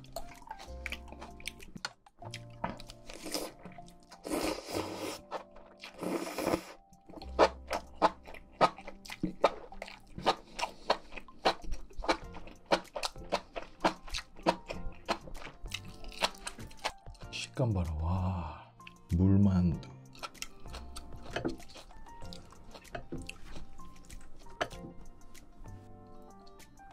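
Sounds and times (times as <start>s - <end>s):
crunchy chewing: 0.0s - 17.2s, 20.0s - 25.5s
soft background music: 0.0s - 26.9s.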